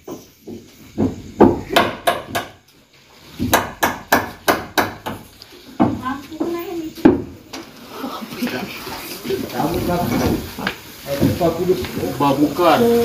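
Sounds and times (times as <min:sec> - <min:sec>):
rapid sharp knocks: 0:00.5 - 0:02.6, 0:03.4 - 0:05.2.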